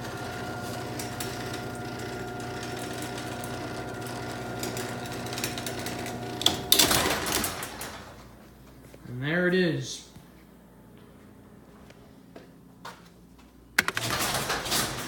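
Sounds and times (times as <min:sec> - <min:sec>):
garage door opener motor humming: 0:00.0 - 0:08.4, 0:13.8 - 0:15.0.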